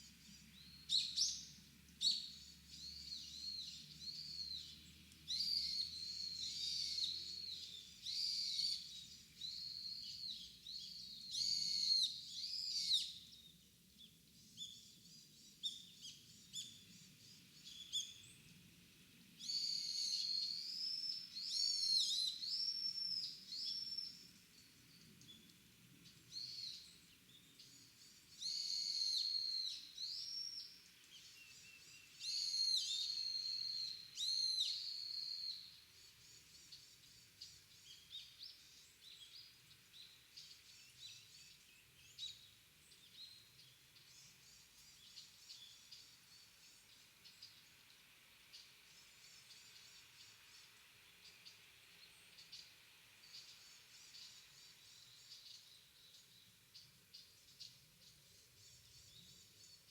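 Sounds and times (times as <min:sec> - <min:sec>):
soft bird chirps: 0:19.4 - 0:59.9.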